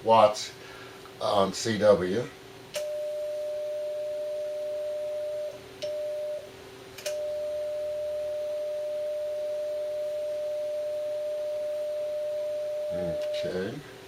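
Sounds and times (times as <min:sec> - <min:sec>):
steady pure sidetone: 0:02.8 - 0:06.5, 0:07.1 - 0:13.9.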